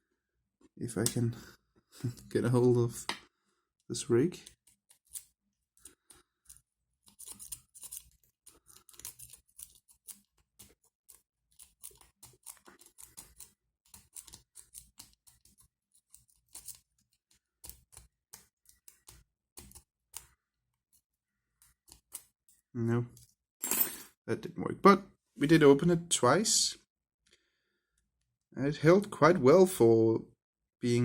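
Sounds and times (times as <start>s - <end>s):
lock pick raking padlock: 4.7s - 16.9s.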